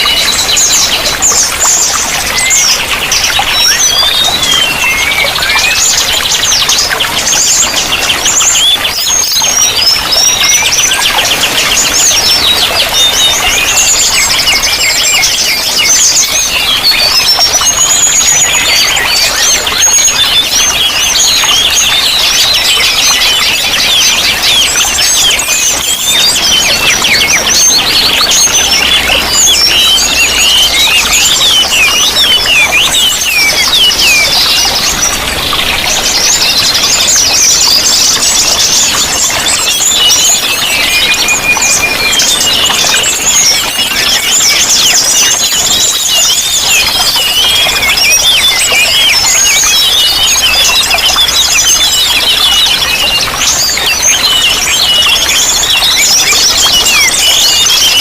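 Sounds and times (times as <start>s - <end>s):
running water: 0.0s - 58.0s
songbirds chirping and trilling: 0.0s - 58.0s.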